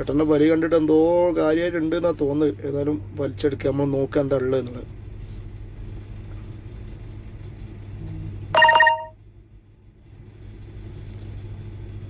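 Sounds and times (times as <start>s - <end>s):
loud multi-pitch tone: 8.6s - 9.1s.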